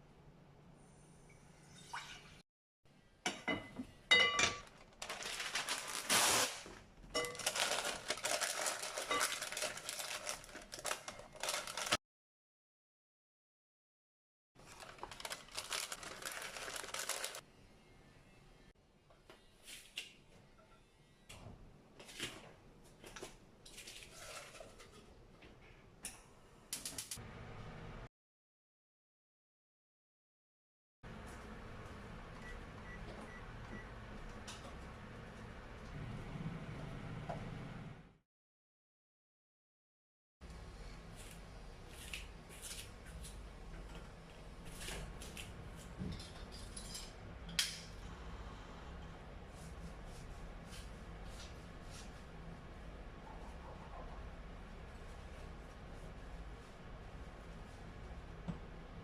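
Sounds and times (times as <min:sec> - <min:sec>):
metal cookware clinking: 0:03.2 - 0:04.7.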